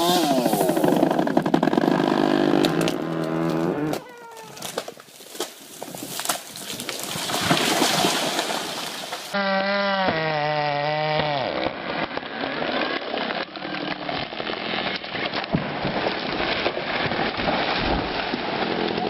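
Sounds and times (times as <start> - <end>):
chainsaw engine running: 0.0 - 4.0
tree falling: 0.0 - 19.0
wood crackling and snapping: 0.4 - 9.4, 11.2 - 19.0.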